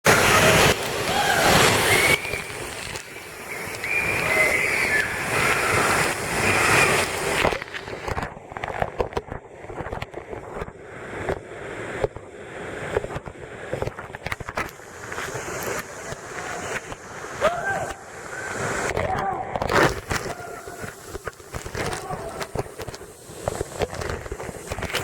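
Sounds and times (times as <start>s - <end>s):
waterfall rushing: 0.1s - 8.1s, 14.9s - 19.0s, 19.8s - 23.7s.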